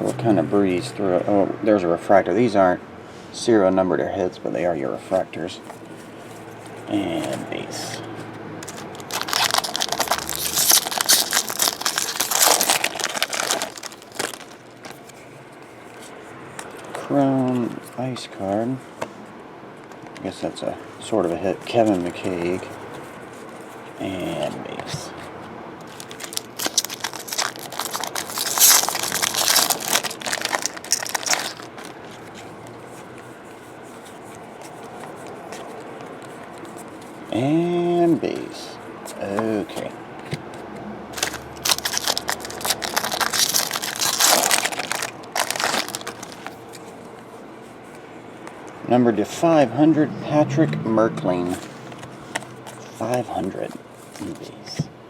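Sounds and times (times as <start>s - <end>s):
foil wrapper crinkling and tearing: 8.6s - 15.2s, 25.8s - 32.8s, 41.2s - 46.8s.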